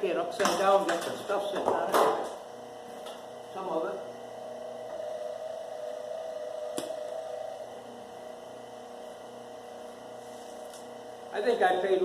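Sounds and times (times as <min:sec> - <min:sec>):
wire stripper humming: 0:04.3 - 0:11.4.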